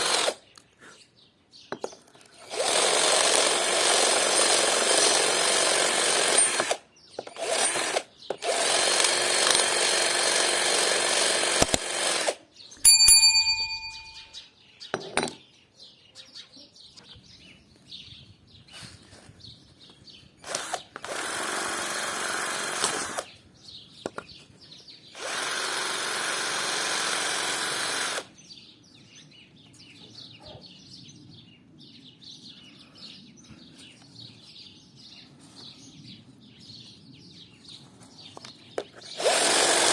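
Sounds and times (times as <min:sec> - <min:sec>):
drill spinning sandpaper disc: 0:00.0 - 0:00.4, 0:02.4 - 0:12.4, 0:20.4 - 0:23.3, 0:25.2 - 0:28.3, 0:39.0 - 0:39.9
faint bird chirps: 0:12.6 - 0:20.0, 0:28.6 - 0:38.7
ringing ping: 0:12.8 - 0:14.5.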